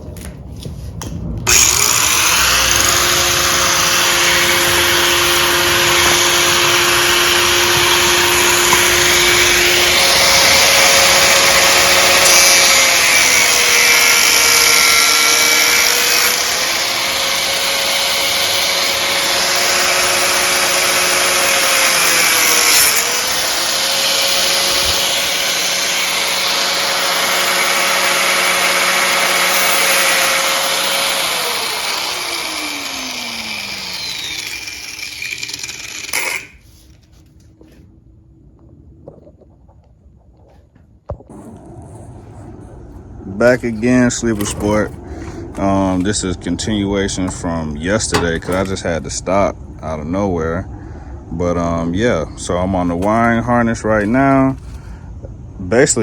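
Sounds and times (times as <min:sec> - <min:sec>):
power cutting tool whining: 0:01.5 - 0:36.9, 0:43.6 - 0:48.9.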